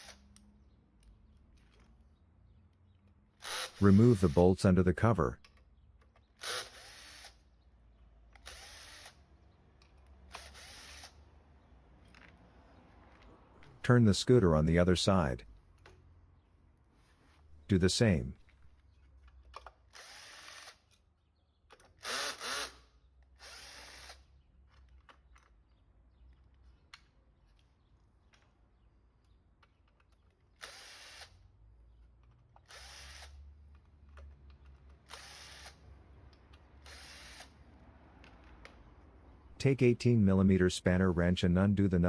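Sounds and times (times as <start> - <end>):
power screwdriver whirring: 3.4 - 4.4, 6.4 - 7.4, 8.4 - 9.2, 10.3 - 11.2, 19.9 - 20.9, 22.0 - 22.8, 23.4 - 24.3, 30.6 - 31.4, 32.6 - 33.4, 35.0 - 35.8, 36.8 - 37.6.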